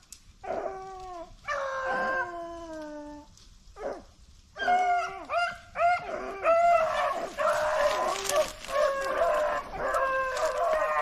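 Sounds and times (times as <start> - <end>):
hounds baying: 3.8 - 11.0.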